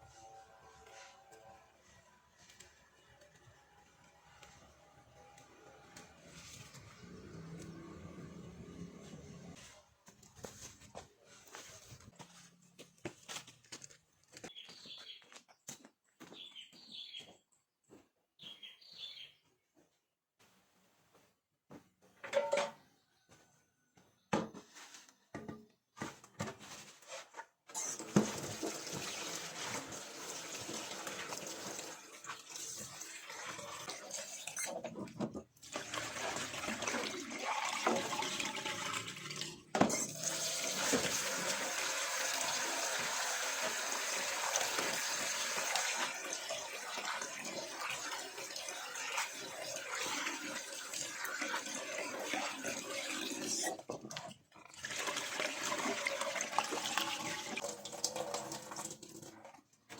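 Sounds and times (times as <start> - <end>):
tap water running into sink: 27.9 - 34.4, 35.6 - 59.6.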